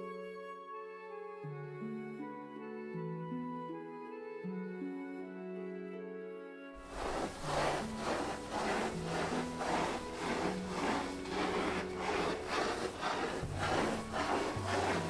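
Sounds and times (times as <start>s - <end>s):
soft background music: 0.0s - 15.0s
rhythmic rasping strokes: 6.9s - 15.0s.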